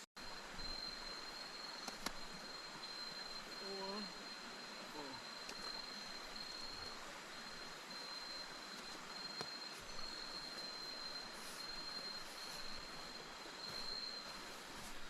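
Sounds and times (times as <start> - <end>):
cricket trilling: 0.2 - 15.0
river water flowing: 0.2 - 15.0
faint clicks: 1.8 - 2.2.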